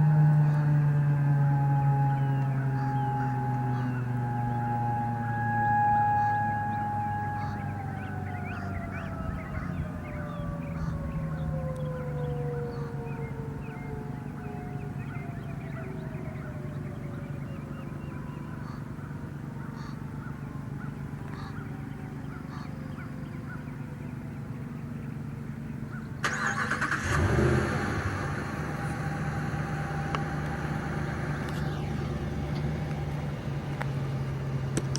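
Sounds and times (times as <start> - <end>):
siren winding down: 0.0 - 19.0, 26.2 - 34.3
car engine starting and running: 0.0 - 34.9.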